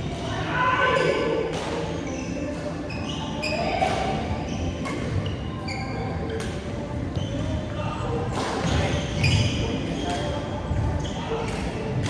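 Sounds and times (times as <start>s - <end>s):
shoe squeaks: 4.4s - 6.4s, 7.1s - 7.8s, 8.6s - 11.5s.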